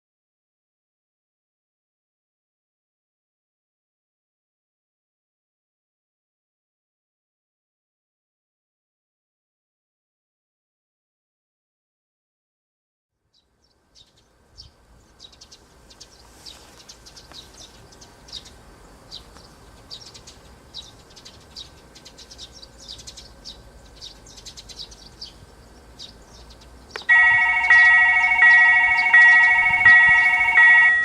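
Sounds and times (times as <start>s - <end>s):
small birds chirping: 13.3s - 31.0s
railroad crossing warning bell: 27.0s - 31.0s.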